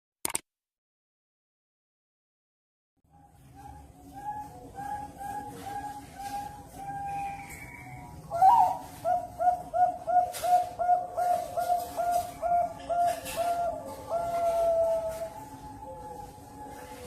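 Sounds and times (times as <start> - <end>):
dove cooing: 3.2 - 17.0.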